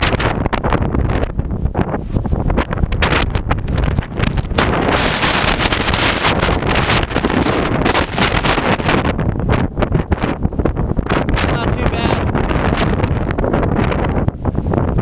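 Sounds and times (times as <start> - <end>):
storm wind buffeting microphone: 0.0 - 15.0.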